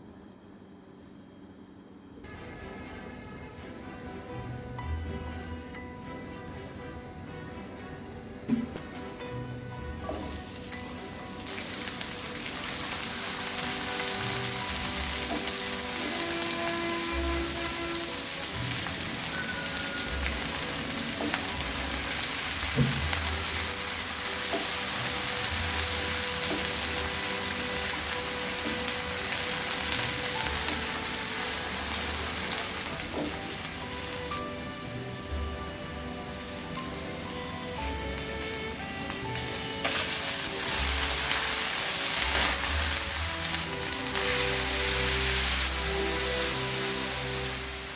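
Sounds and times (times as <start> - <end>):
food sizzling in oil: 10.0 - 47.9.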